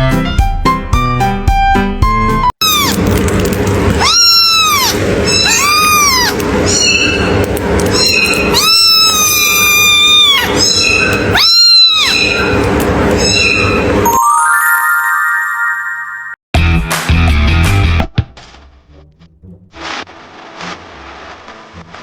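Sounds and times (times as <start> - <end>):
cat meowing: 2.6 - 14.0.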